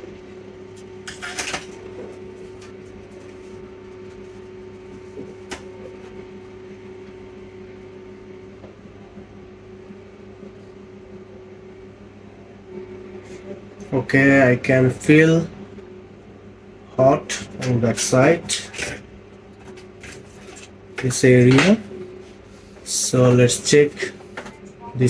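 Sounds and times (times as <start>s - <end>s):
electrical hum: 0.0s - 25.0s.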